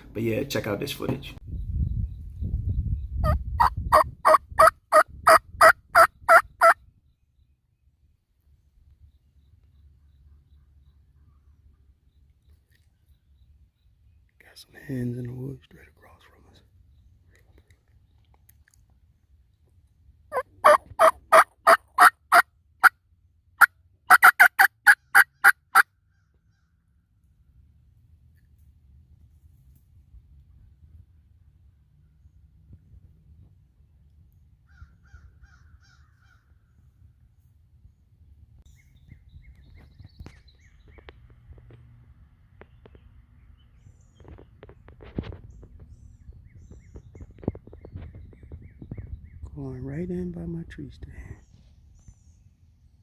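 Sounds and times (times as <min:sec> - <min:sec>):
turkey yelps: 0:03.2 - 0:06.8, 0:20.3 - 0:22.4, 0:24.1 - 0:26.6.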